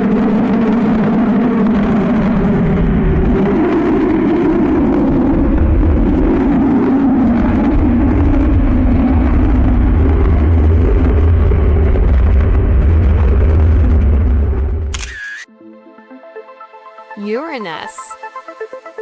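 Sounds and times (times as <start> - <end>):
deep noisy rumble and drone: 0.0 - 15.1.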